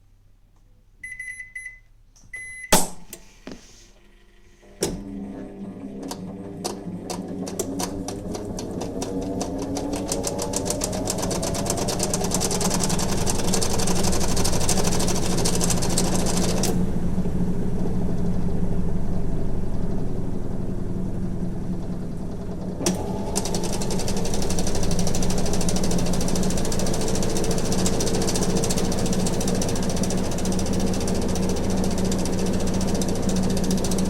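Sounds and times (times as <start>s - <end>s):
washing machine motor hum: 4.0s - 34.0s
drum spinning with rising whine: 8.6s - 22.8s.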